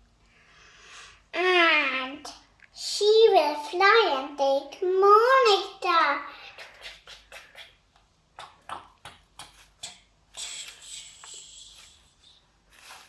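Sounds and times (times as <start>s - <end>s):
soft hiss: 5.6s - 13.0s.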